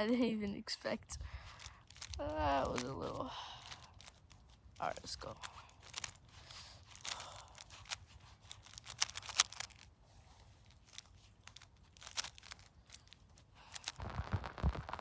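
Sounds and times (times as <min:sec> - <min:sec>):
puzzle cube plastic clicks: 0:01.4 - 0:09.9, 0:10.6 - 0:14.0.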